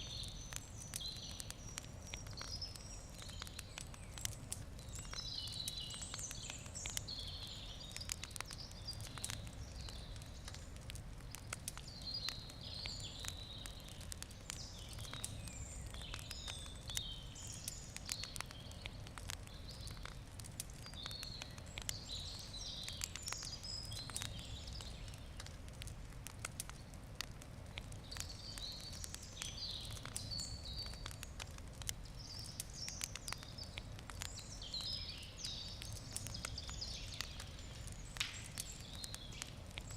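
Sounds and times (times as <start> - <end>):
campfire crackling and popping: 0.0 - 39.9
birds chirping: 11.2 - 20.2, 32.0 - 39.9.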